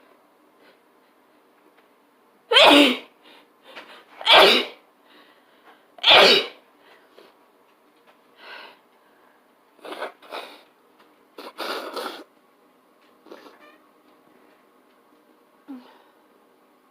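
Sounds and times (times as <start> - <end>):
person sneezing: 2.5 - 3.1, 4.2 - 4.8, 6.0 - 6.6.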